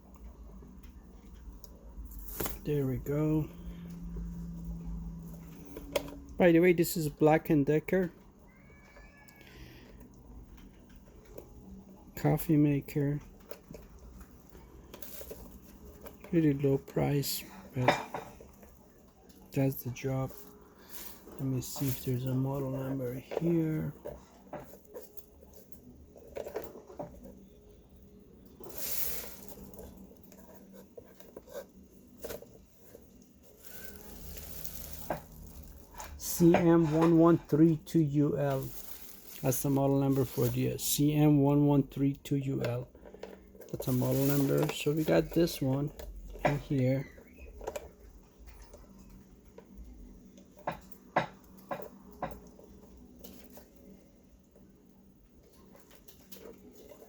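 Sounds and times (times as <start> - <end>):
faint low hum: 0.0 - 57.0
scraping rustle: 13.3 - 18.7, 19.4 - 27.5, 28.5 - 41.0, 42.6 - 49.0
coffee maker being handled: 28.5 - 41.0, 42.6 - 48.0.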